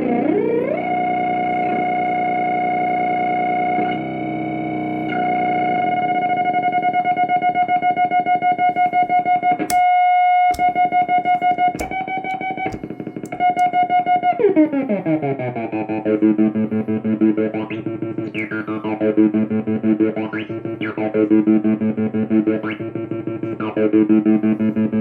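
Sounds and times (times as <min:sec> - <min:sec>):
sharp clicks: 0:10.5 - 0:13.8.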